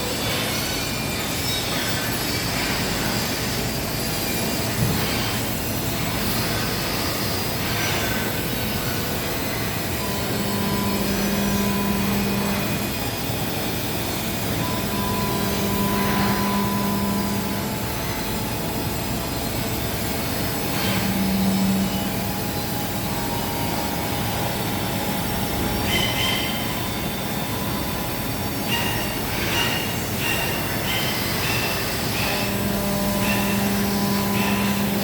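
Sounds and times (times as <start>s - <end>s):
machining center running: 0.0s - 35.0s.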